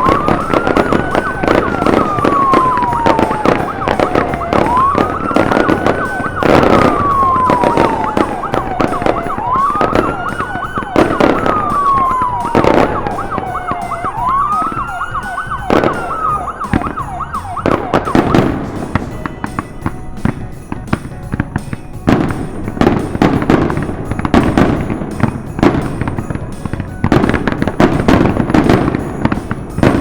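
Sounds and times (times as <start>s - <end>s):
police siren wailing: 0.0s - 19.6s, 22.8s - 30.0s
police siren yelping: 0.0s - 19.6s
firework bangs and crackling: 0.0s - 30.0s.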